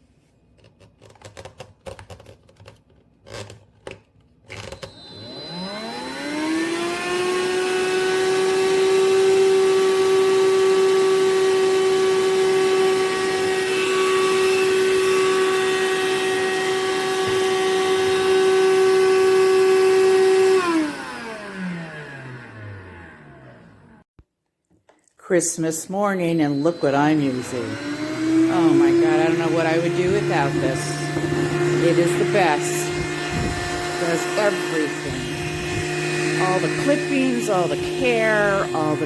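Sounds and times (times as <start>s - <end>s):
handheld vacuum motor whine: 4.4s - 24.1s, 25.6s - 39.0s.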